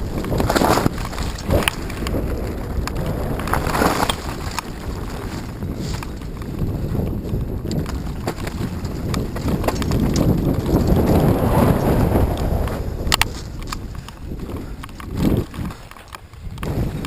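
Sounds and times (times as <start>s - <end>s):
rumbling noise: 0.0s - 15.8s
scattered clicks and knocks: 3.7s - 11.2s.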